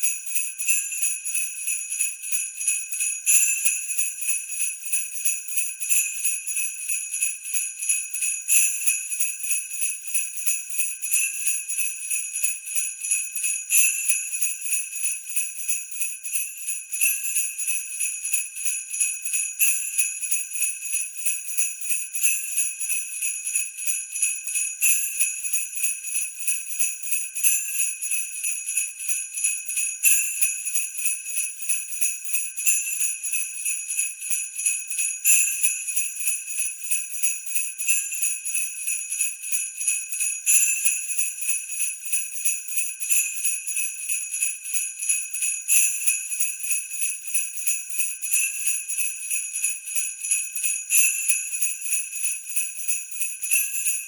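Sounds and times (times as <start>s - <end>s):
sleigh bells jingling: 17.0s - 54.0s.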